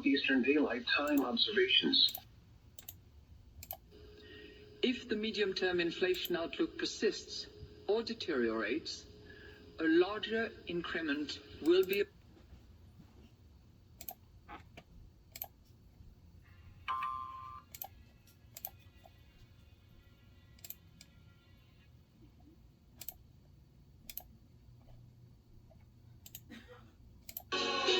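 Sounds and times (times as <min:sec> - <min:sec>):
faint steady tones: 0:00.0 - 0:14.3
low hum: 0:03.6 - 0:12.0.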